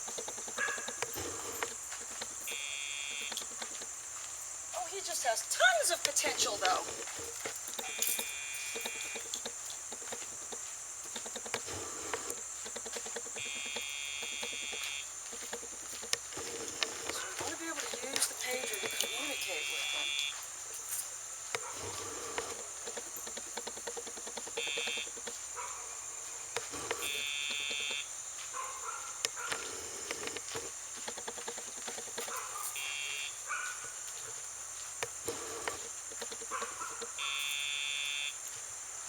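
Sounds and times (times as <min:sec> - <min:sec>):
electronic buzzing: 0:00.0 - 0:03.9, 0:06.5 - 0:20.4, 0:22.0 - 0:25.4, 0:26.4 - 0:28.1, 0:32.8 - 0:33.4.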